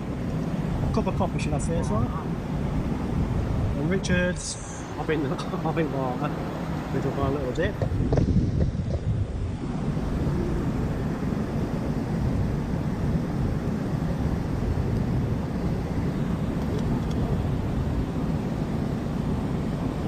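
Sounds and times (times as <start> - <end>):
fast-flowing river water: 0.0 - 8.4.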